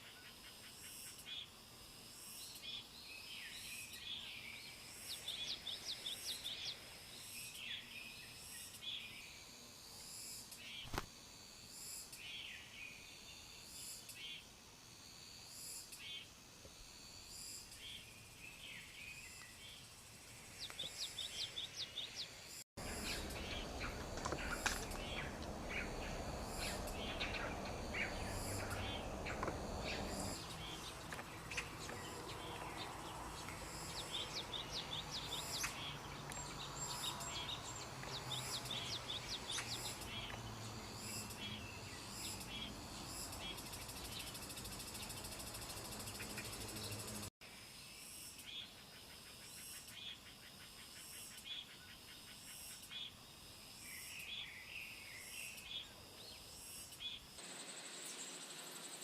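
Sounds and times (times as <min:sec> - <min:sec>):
outdoor background noise: 0:00.0 - 0:59.0
birds chirping: 0:20.5 - 0:47.3.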